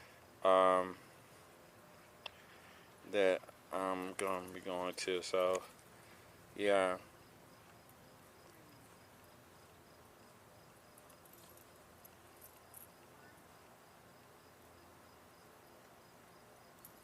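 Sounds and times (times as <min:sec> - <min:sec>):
faint ticks: 0:02.2 - 0:02.6
high-pitched insect chirp: 0:03.4 - 0:17.0.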